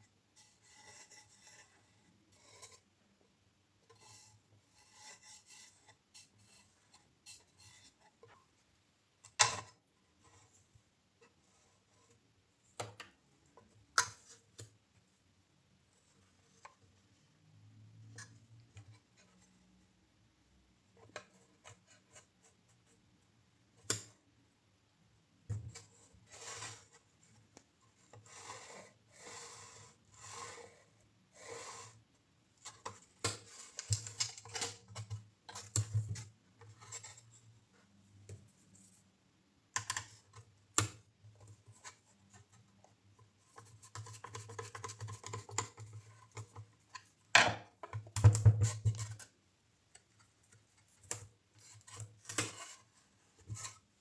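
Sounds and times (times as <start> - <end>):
rubbing or scraping strokes: 26.2 - 26.9, 28.2 - 32.0.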